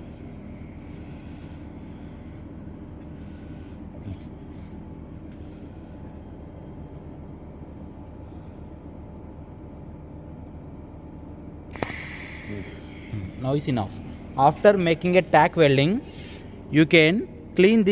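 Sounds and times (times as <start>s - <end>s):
low mechanical hum: 0.0s - 17.9s.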